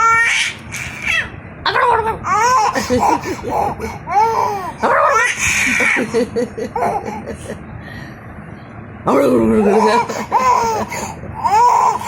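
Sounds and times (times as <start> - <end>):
baby giggling and squealing: 9.6 - 12.0.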